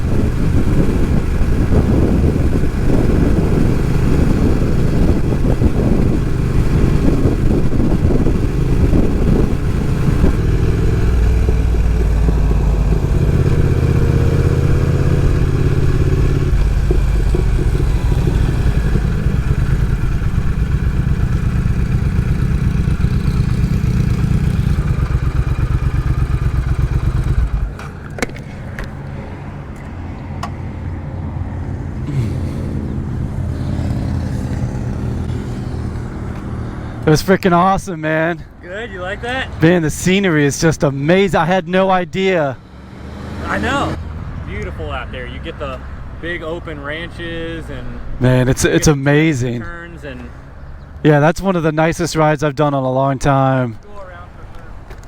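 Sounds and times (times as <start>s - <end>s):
wind noise: 0.0s - 36.9s
motorcycle engine: 0.0s - 37.2s, 42.6s - 51.0s.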